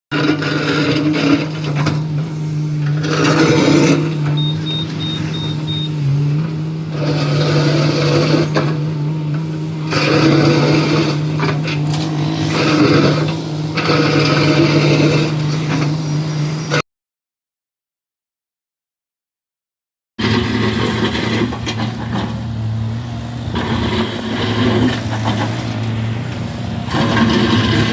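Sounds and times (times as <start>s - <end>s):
diesel engine running: 0.1s - 16.8s, 20.2s - 27.9s
mechanical rattle and scraping: 0.1s - 16.8s, 20.2s - 27.9s
high evenly spaced beeps: 4.4s - 6.0s.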